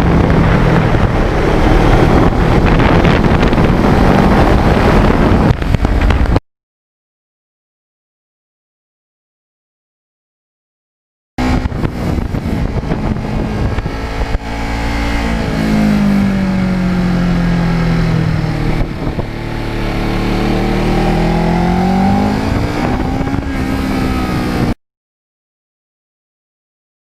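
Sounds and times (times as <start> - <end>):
motorcycle engine revving: 0.0 - 6.4, 11.4 - 24.8.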